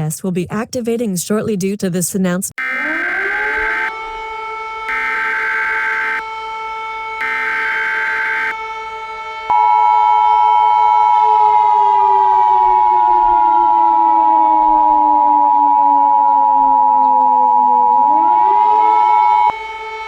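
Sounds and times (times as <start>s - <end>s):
two-tone attention signal: 2.6s - 3.9s, 4.9s - 6.2s, 7.2s - 8.6s
harsh two-tone data buzz: 2.6s - 4.0s, 4.9s - 6.2s, 7.2s - 8.6s
civil defense siren: 2.6s - 20.0s.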